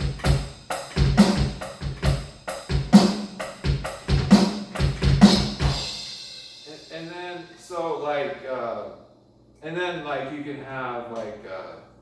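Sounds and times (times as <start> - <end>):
drum kit playing a steady beat: 0.0 - 7.5.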